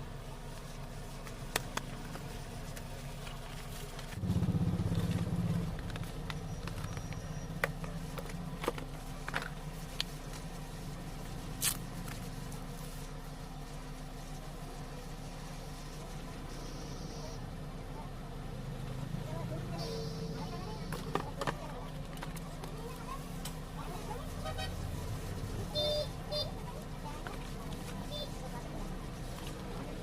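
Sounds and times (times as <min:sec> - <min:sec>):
low rumble: 0:04.2 - 0:07.4.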